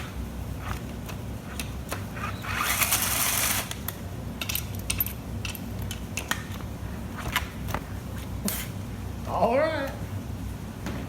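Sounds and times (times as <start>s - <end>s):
metal tools and bolts clicking: 4.4s - 6.4s.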